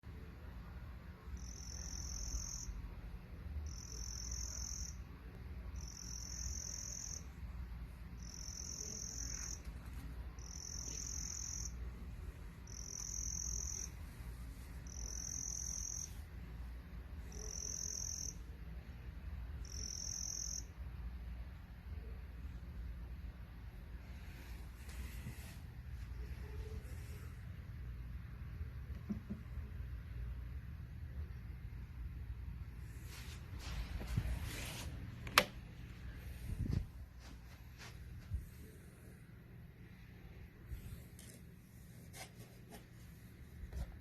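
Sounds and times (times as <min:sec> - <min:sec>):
crickets chirping: 0:01.2 - 0:07.5, 0:08.1 - 0:09.7, 0:10.3 - 0:12.0, 0:12.6 - 0:14.1, 0:14.8 - 0:16.3, 0:17.2 - 0:18.6, 0:19.3 - 0:21.0
steady low rumble: 0:20.7 - 0:41.9.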